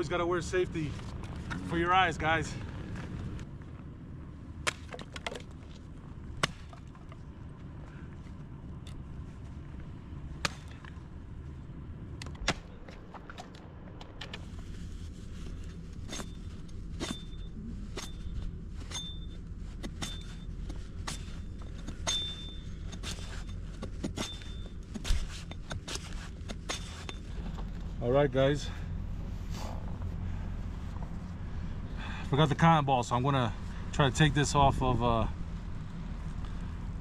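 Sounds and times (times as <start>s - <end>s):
sharp ringing knocks and clicks: 16.1s - 20.4s, 21.0s - 24.9s.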